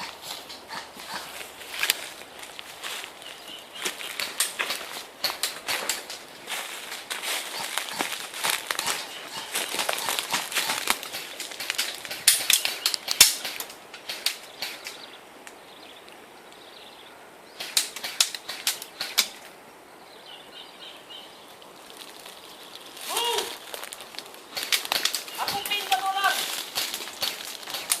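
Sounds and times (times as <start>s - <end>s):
airsoft guns firing: 7.5s - 15.0s, 17.6s - 19.4s, 24.5s - 28.0s.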